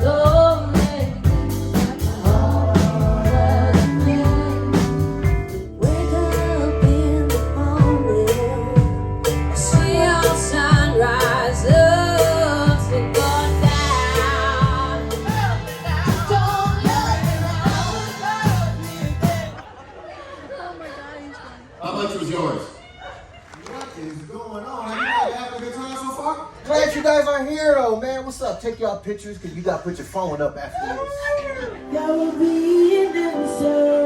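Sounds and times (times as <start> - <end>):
song with singing and beat: 0.0 - 19.6.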